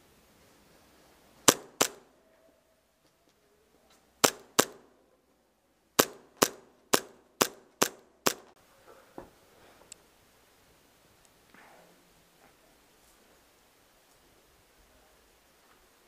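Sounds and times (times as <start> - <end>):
airsoft gun shots with echo: 1.5 - 2.1, 4.2 - 4.9, 6.0 - 8.6.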